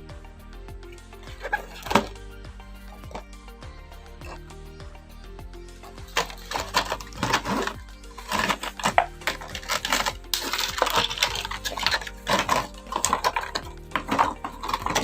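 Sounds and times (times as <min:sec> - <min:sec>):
soft background music: 0:00.0 - 0:15.0
plastic packaging crackling: 0:06.2 - 0:15.0.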